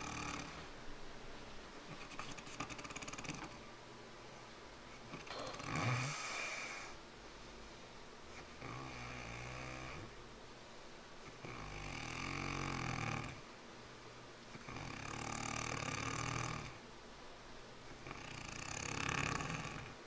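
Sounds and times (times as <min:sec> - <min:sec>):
rasping snores: 0:00.0 - 0:00.7, 0:01.9 - 0:03.6, 0:05.0 - 0:07.0, 0:08.4 - 0:10.1, 0:11.3 - 0:13.4, 0:14.6 - 0:16.8, 0:17.9 - 0:20.0.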